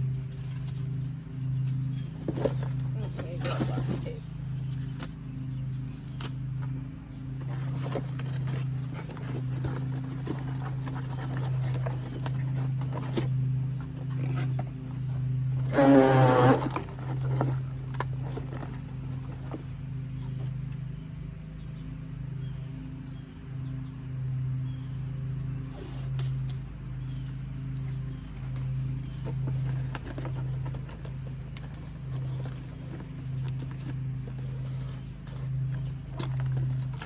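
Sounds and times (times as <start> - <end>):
low hum: 0.0 - 37.0
tape pulled off roll: 15.6 - 17.5.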